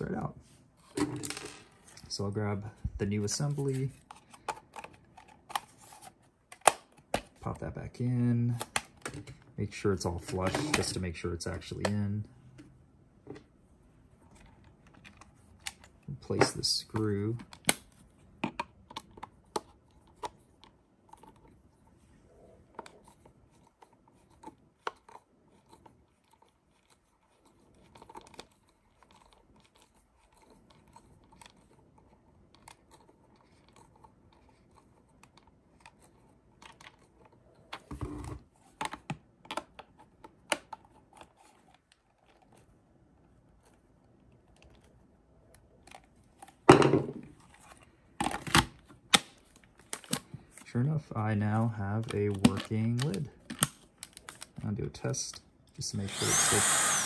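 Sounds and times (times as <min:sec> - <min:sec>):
screwdriver driving screw into plastic: 0:56.0 - 0:57.0.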